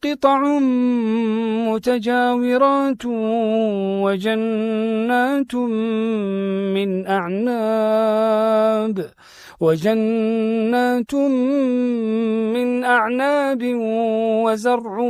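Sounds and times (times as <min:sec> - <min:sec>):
man chanting melodically: 0:00.0 - 0:15.0
intake of breath: 0:09.1 - 0:09.6.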